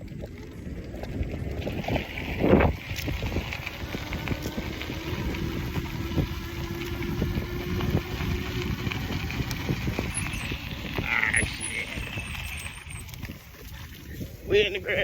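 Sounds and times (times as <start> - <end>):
wind buffeting microphone: 0.0 - 15.0
electric motor whine: 1.6 - 12.8.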